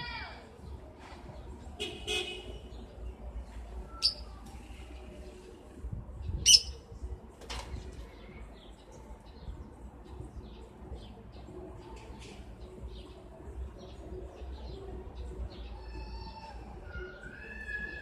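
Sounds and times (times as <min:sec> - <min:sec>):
birds chirping: 0:00.0 - 0:07.2, 0:07.8 - 0:18.0.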